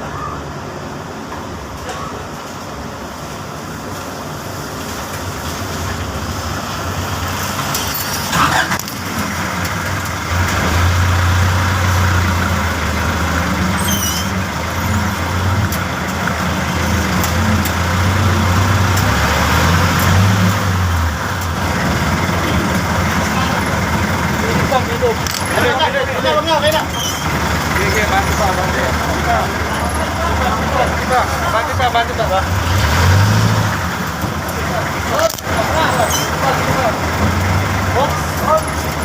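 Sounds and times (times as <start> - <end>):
vehicle engine running: 8.3 - 39.0.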